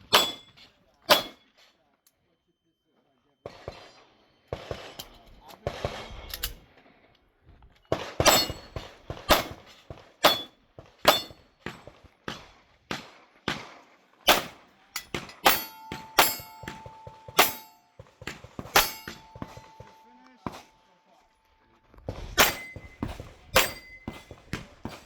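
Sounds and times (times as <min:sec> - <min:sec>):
steel targets ringing: 0:00.0 - 0:01.4, 0:08.2 - 0:09.6, 0:10.2 - 0:11.4, 0:14.3 - 0:21.0, 0:22.4 - 0:25.0
pistol shots: 0:01.1 - 0:01.4, 0:07.9 - 0:21.0, 0:22.2 - 0:25.0.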